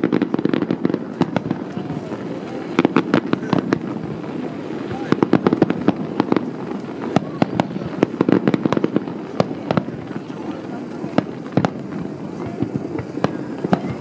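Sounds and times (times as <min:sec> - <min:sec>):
fireworks bursting with crackling bangs: 0:00.0 - 0:14.0
murmur of spectators' voices: 0:00.0 - 0:14.0.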